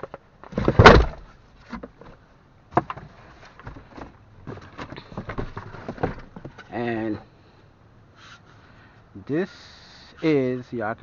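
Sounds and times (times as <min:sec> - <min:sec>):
loud thump and rustle: 0:00.5 - 0:02.1.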